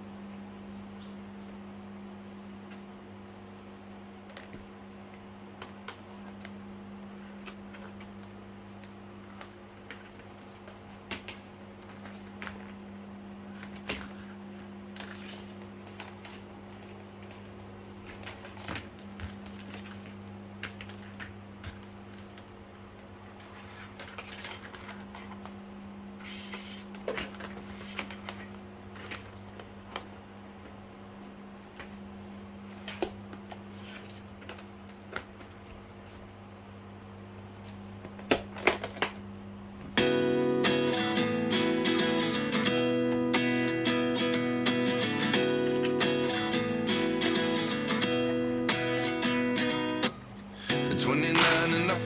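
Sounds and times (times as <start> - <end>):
low electrical hum: 0.0 - 52.0.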